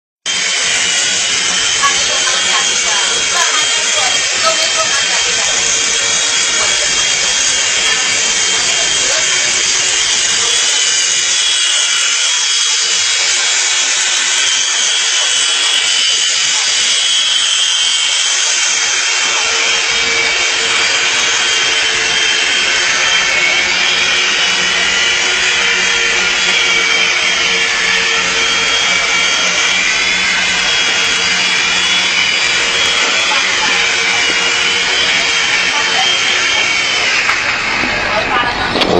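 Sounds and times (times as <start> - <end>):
toy helicopter motors buzzing: 0.3 - 38.9.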